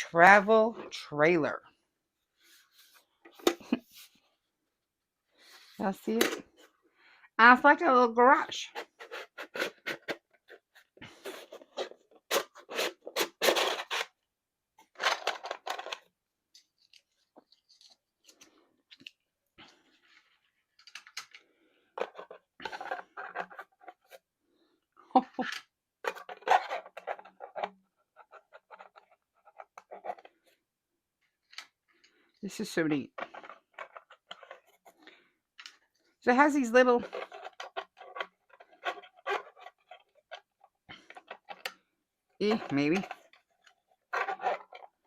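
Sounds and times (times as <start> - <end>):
plastic case clicks and scrapes: 8.7 - 14.1, 14.8 - 16.1, 20.1 - 24.2, 25.4 - 30.5, 33.1 - 35.0, 37.0 - 41.8, 42.4 - 45.0.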